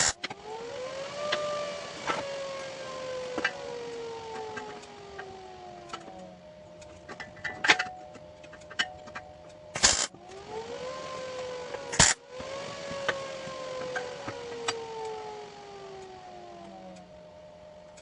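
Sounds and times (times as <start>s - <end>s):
harsh bursts: 0.0s - 6.2s, 9.7s - 16.8s
power tool motor whining: 0.0s - 18.0s
sharp clicks: 0.0s - 18.0s.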